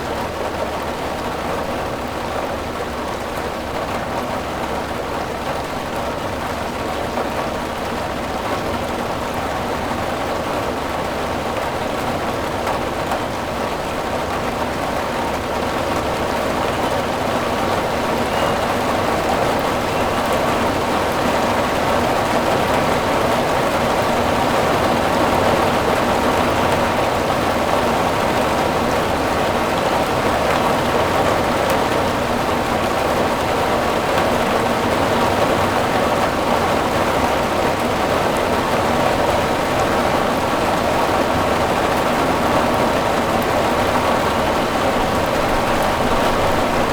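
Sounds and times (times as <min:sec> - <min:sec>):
rain drumming on metal roof: 0:00.0 - 0:46.9.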